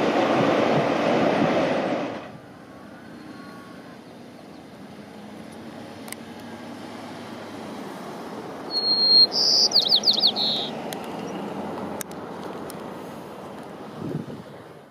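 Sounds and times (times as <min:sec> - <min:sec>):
bird chirping: 0:08.7 - 0:11.4.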